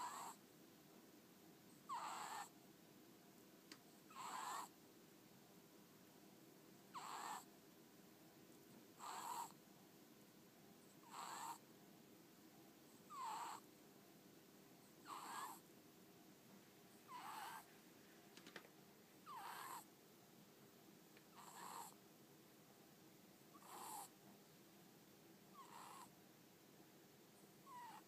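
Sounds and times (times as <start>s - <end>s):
ferret snoring: 0.0s - 0.4s, 1.8s - 2.5s, 4.1s - 4.8s, 6.9s - 7.5s, 9.0s - 9.6s, 11.0s - 11.6s, 13.0s - 13.7s, 15.0s - 15.6s, 17.0s - 17.7s, 19.2s - 19.9s, 21.3s - 22.0s, 23.5s - 24.2s, 25.5s - 26.1s, 27.6s - 28.0s.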